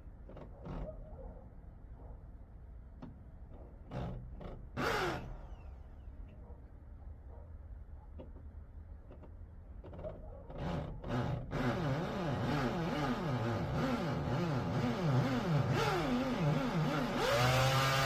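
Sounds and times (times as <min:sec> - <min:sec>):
power drill boring into concrete: 0:04.8 - 0:05.6, 0:11.1 - 0:18.0.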